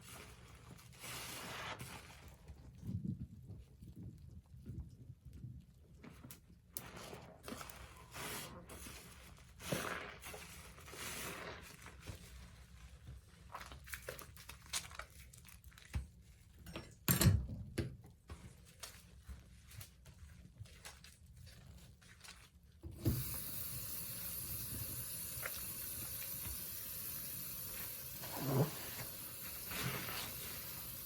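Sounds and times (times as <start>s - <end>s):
soapy sponge squelching: 0.0s - 2.6s, 6.8s - 16.0s, 18.6s - 31.0s.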